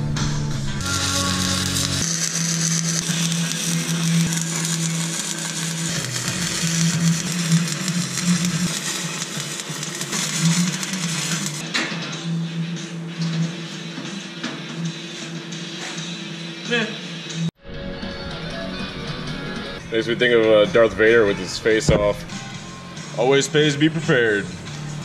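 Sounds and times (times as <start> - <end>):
angle grinder grinding metal: 0.8 - 11.6.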